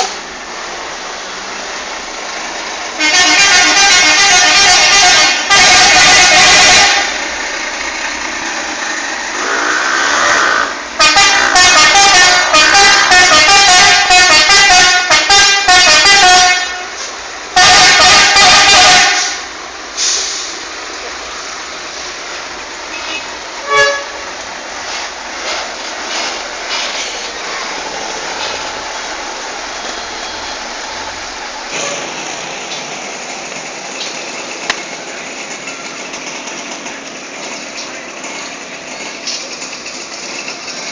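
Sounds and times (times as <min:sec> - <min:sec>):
traffic noise: 0:00.0 - 0:40.9
bus musical horn melody: 0:02.9 - 0:07.3, 0:09.3 - 0:20.1, 0:22.9 - 0:24.3
short horn toot: 0:09.4 - 0:16.9.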